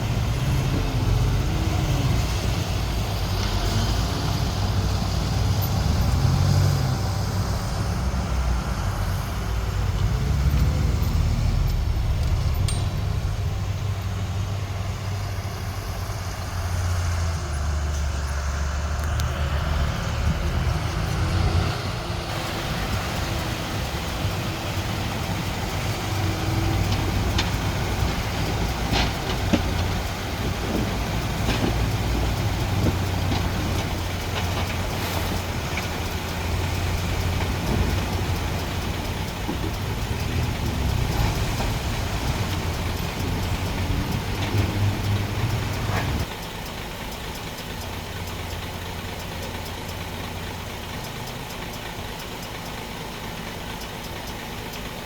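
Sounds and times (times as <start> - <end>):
diesel engines running: 0.0 - 55.0.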